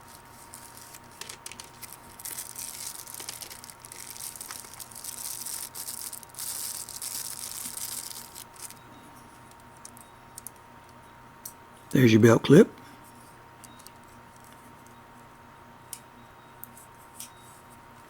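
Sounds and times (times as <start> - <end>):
packaging rustling and crinkling: 0.0 - 8.8.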